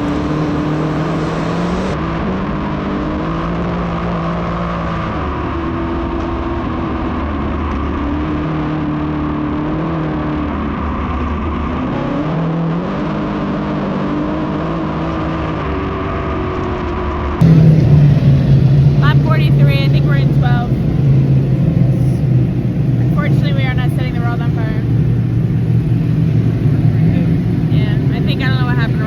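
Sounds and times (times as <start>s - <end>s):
race car engines: 0.0s - 29.0s.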